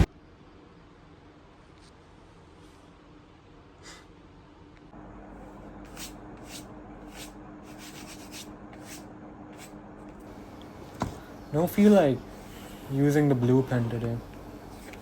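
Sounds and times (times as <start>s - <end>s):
steady low hum: 0.0s - 15.0s
pen scratching on paper: 5.9s - 9.0s.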